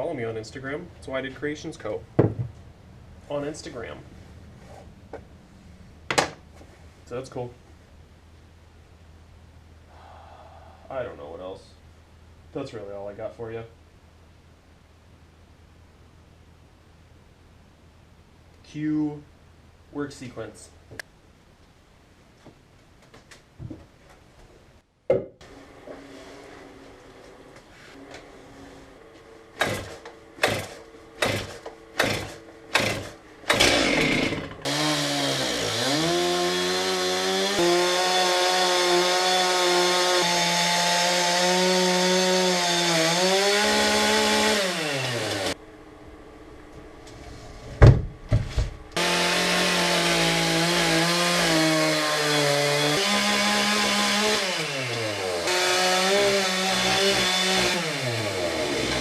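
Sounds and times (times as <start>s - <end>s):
chainsaw pull cord: 29.6s - 38.7s, 52.7s - 59.0s
chainsaw running at high revs: 29.6s - 45.6s, 49.0s - 59.0s.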